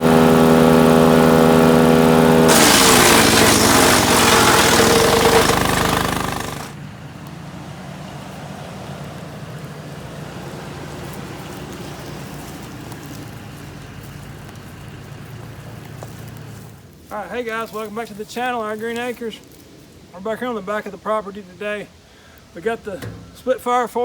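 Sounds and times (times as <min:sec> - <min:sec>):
chipper crunching wood: 0:00.0 - 0:06.8
wood chipper engine running: 0:00.0 - 0:06.9.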